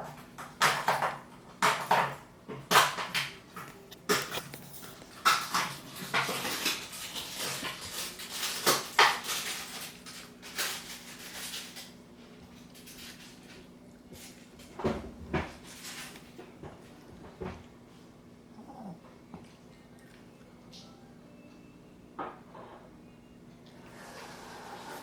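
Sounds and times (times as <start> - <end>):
low steady hum: 3.2 - 24.0
dog breathing noisily and snuffling: 18.5 - 19.9.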